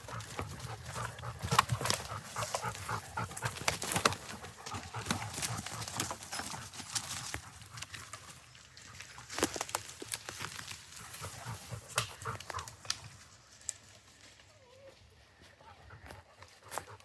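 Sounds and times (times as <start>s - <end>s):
twigs snapping: 0.1s - 14.0s
footsteps through leaf litter: 2.1s - 12.6s.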